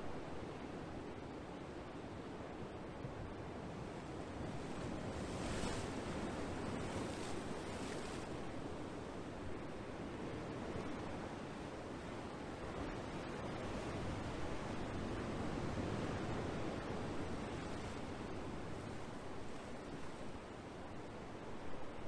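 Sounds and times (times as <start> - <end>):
ocean waves: 4.6 - 8.8.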